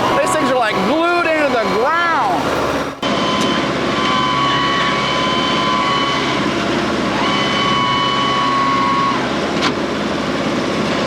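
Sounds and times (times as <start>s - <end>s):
tractor diesel engine running: 0.0s - 4.1s.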